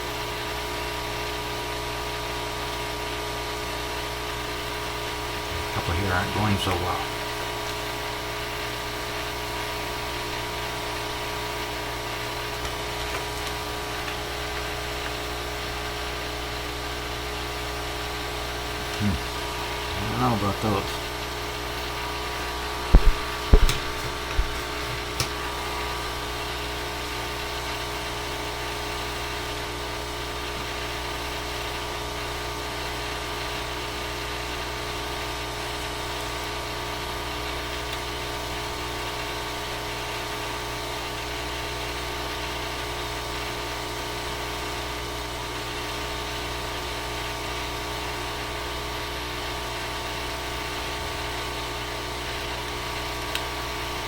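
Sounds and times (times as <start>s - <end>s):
steady machine hum: 3.7s - 32.4s
sharp knocks: 23.0s - 25.3s.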